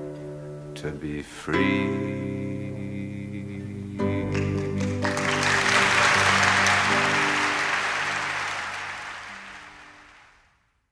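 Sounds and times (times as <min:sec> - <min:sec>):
audience applause: 0:04.4 - 0:10.4.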